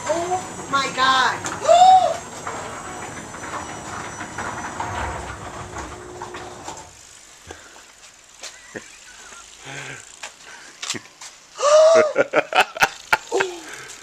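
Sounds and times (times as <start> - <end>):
garage door opener running: 0.0 - 7.1.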